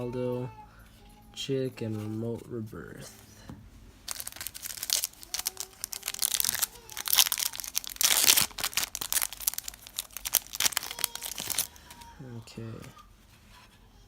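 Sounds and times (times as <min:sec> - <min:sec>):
wrapper crinkling and tearing: 0:04.1 - 0:12.1.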